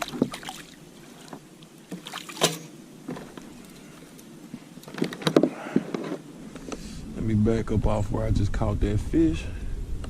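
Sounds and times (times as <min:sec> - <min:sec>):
knocks and clicks of gear handled: 0:04.8 - 0:06.2.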